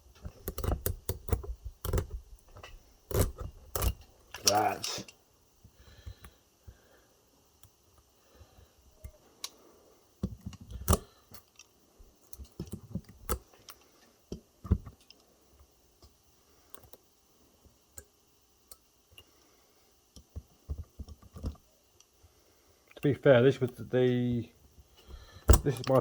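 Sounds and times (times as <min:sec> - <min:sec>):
pliers clicking on metal strip: 0:00.4 - 0:02.1, 0:03.1 - 0:05.0.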